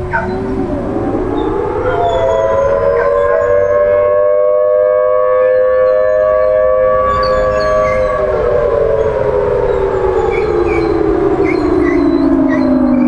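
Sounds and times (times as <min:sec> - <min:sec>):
tornado warning siren: 0:00.0 - 0:13.0.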